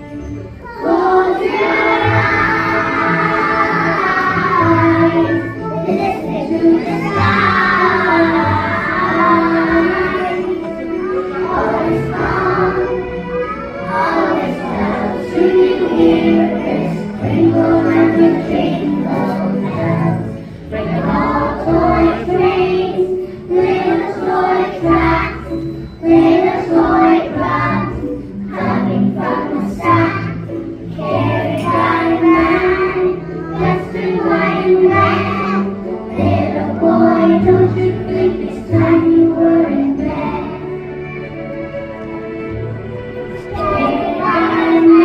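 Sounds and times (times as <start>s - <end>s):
child-like singing voice: 0.6s - 40.6s, 43.5s - 45.0s.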